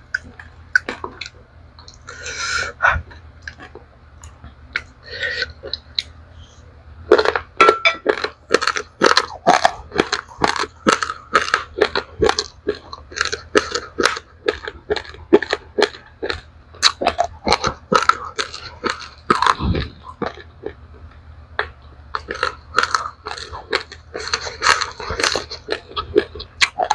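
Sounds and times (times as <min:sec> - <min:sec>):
steady low hum: 0:00.0 - 0:26.9
crunching rice grains: 0:07.1 - 0:20.8, 0:21.6 - 0:26.9.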